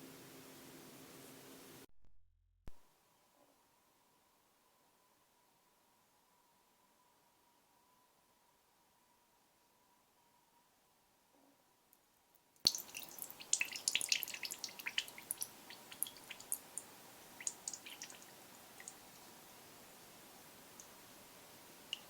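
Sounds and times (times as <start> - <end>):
liquid dripping and splashing: 12.7 - 19.4.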